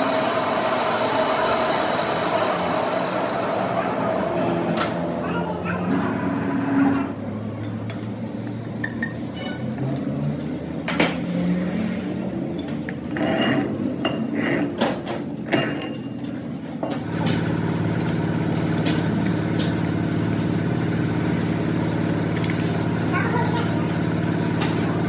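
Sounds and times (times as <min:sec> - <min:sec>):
machine humming: 0:00.0 - 0:05.2
louder machine hum: 0:00.0 - 0:07.1, 0:17.0 - 0:25.0.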